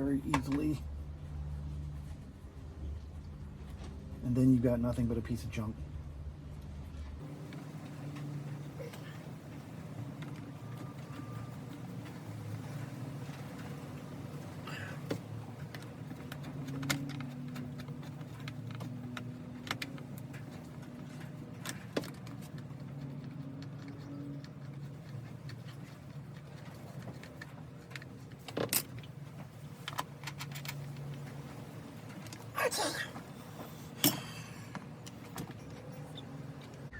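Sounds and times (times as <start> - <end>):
metal tools clicking and clinking: 15.6 - 32.5.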